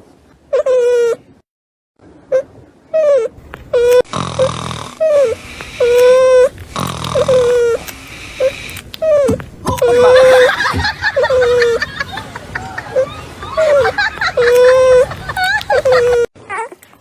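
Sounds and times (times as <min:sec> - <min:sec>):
puppies snuffling and grunting: 0:03.4 - 0:16.3
puppies crying: 0:05.0 - 0:16.3.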